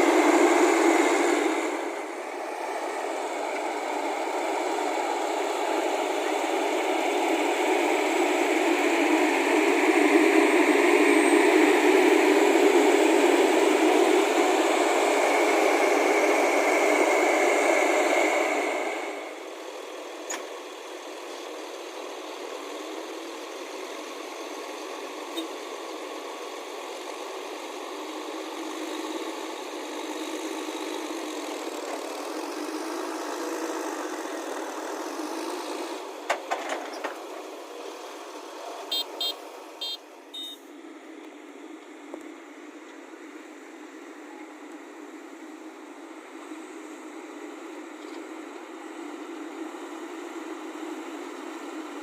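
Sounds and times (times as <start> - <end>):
heavy machinery engine running: 0.0 - 52.0
short high beeps: 38.9 - 40.6.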